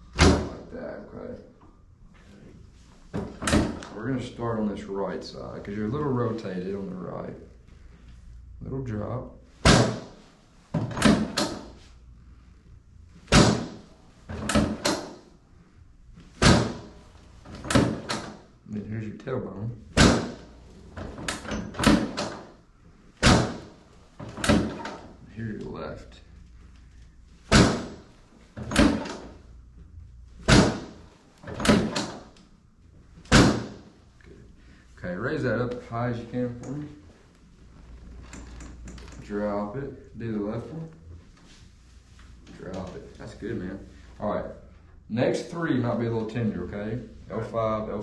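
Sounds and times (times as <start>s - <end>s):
padded table section slamming down: 9.6s - 10.2s, 13.3s - 15.2s, 16.4s - 18.4s, 20.0s - 22.5s, 23.2s - 25.1s, 27.5s - 29.4s, 30.4s - 32.3s, 33.3s - 33.9s.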